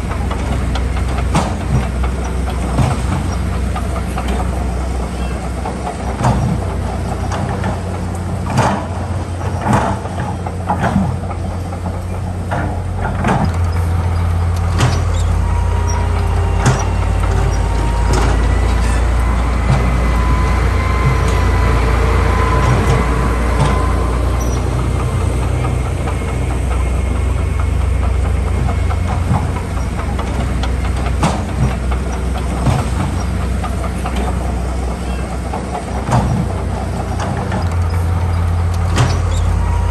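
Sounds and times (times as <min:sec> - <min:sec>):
diesel machinery droning: 0:00.0 - 0:39.9
thin whine: 0:13.5 - 0:32.3.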